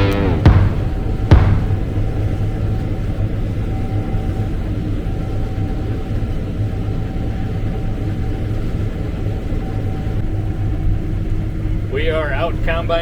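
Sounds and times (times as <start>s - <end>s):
combine harvester engine drone: 0.0s - 2.8s, 11.7s - 13.0s.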